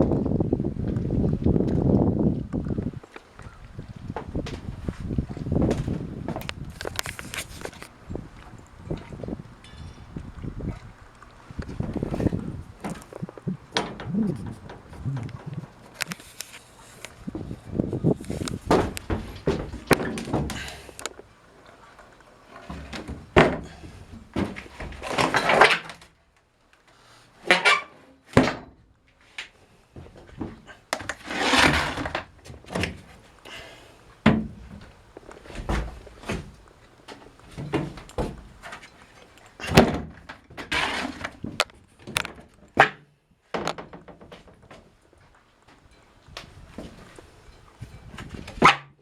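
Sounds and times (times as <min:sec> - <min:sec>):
wooden scraping slide: 0:31.2 - 0:32.2, 0:40.7 - 0:41.4.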